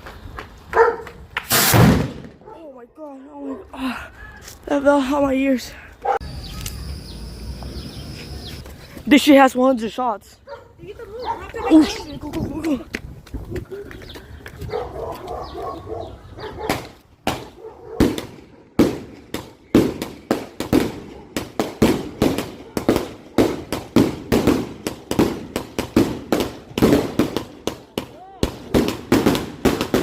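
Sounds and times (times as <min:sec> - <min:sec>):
firework cake firing sharp bangs: 0:01.5 - 0:02.4, 0:16.7 - 0:30.0.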